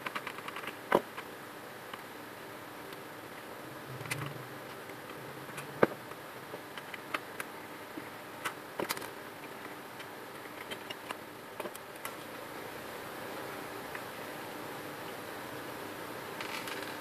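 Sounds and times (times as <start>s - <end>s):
printer motor hum: 3.4s - 9.8s.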